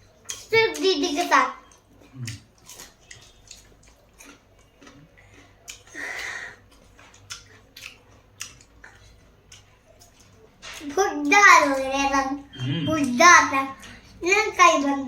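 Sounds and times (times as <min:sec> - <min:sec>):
chewing clicks and smacks: 0:00.0 - 0:06.0, 0:06.6 - 0:11.0.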